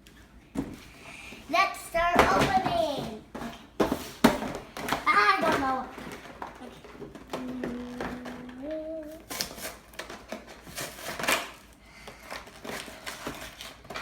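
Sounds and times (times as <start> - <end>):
plastic and cardboard crackling: 2.0 - 14.0
child humming: 7.2 - 9.3.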